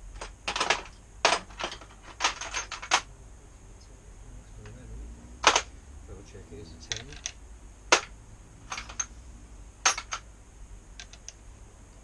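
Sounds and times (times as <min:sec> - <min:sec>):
metal hand tools clinking: 0:09.8 - 0:10.2.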